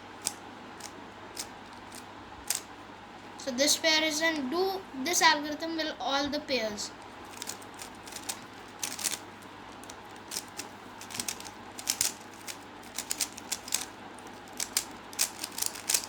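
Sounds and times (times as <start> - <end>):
puzzle cube plastic clicks: 0.2 - 2.7, 7.2 - 16.0.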